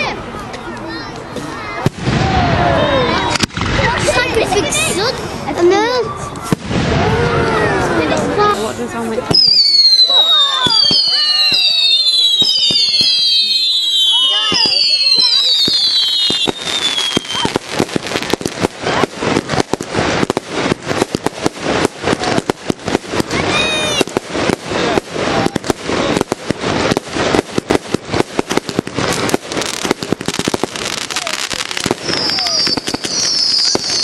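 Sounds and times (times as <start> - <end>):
firework crackle of small bangs: 0.4 - 34.0
firework whistle: 9.3 - 19.0, 23.2 - 24.2, 29.2 - 34.0.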